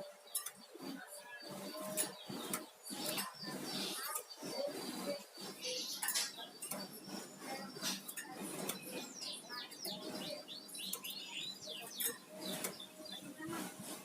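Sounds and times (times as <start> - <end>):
songbird chattering song: 0.0 - 14.0.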